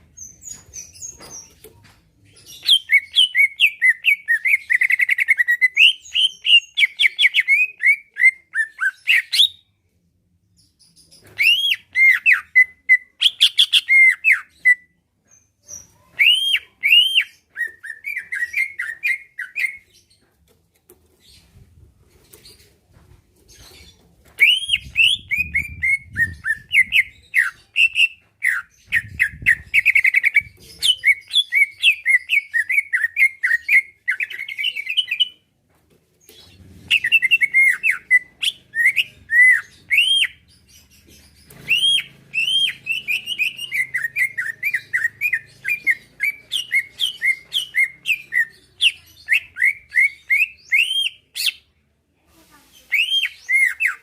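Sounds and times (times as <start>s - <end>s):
bird singing chirps and whistles: 15.7s - 19.8s, 24.4s - 35.3s, 36.9s - 40.4s, 41.6s - 51.6s.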